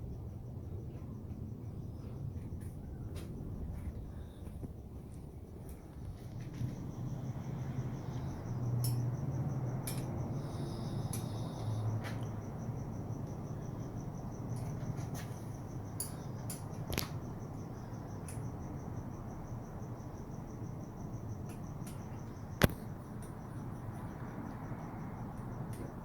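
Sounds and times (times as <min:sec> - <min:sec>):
cricket chirping: 0:00.0 - 0:26.0
low background hum: 0:00.0 - 0:26.0
clicks of handled tools: 0:08.8 - 0:09.0, 0:09.8 - 0:10.2.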